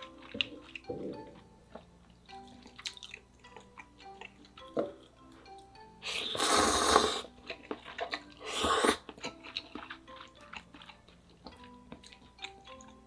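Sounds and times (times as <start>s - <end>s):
wet chewing clicks: 0.0s - 13.0s
loud noodle slurps: 6.0s - 7.4s, 8.1s - 9.2s.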